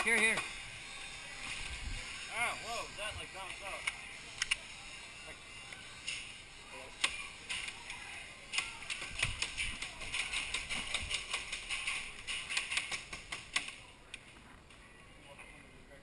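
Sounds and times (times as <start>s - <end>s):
airsoft guns firing: 7.0s - 13.8s.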